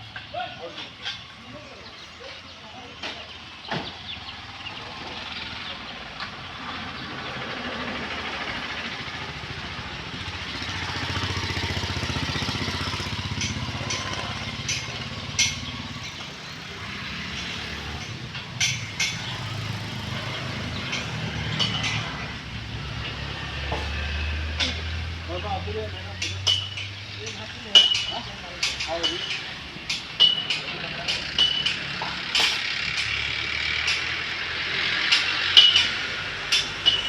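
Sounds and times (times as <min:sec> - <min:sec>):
sharp knocks and clinks: 0:10.5 - 0:37.0.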